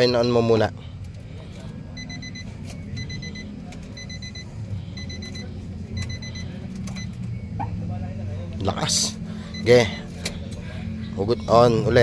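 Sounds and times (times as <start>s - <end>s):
car warning chime beeping: 0.0s - 0.6s, 1.9s - 7.6s, 8.9s - 10.2s
low steady hum: 0.0s - 12.0s.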